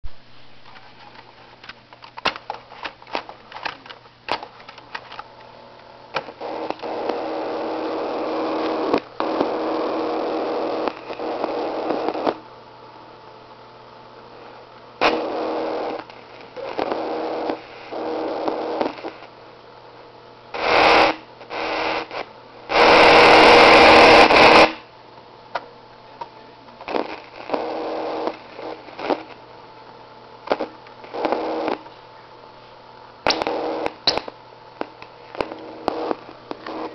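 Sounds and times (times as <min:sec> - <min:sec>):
steady low hum: 0:00.0 - 0:36.9
electronic crackles and clicks: 0:06.1 - 0:12.4, 0:15.0 - 0:19.4, 0:20.6 - 0:24.9, 0:26.8 - 0:29.4, 0:30.4 - 0:31.9, 0:33.2 - 0:36.9
buzzing noise: 0:06.1 - 0:12.5, 0:14.3 - 0:19.4, 0:20.5 - 0:24.9, 0:26.8 - 0:29.4, 0:30.4 - 0:31.9, 0:33.2 - 0:36.9.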